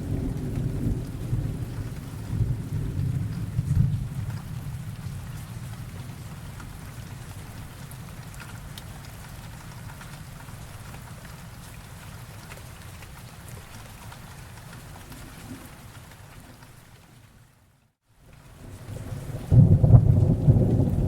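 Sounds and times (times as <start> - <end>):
thunder rumble: 0.0 - 6.8, 18.6 - 21.0
steady rain: 0.0 - 21.0.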